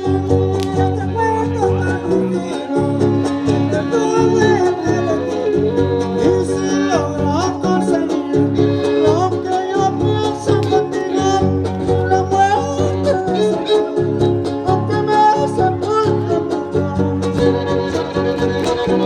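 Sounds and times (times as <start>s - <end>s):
strummed guitars: 0.0s - 19.0s
violin melody: 0.0s - 19.0s.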